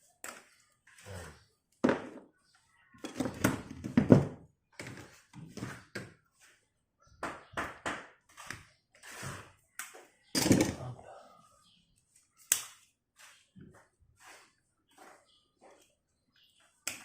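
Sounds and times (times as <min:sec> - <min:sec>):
tools knocking and tapping: 0:10.4 - 0:10.8.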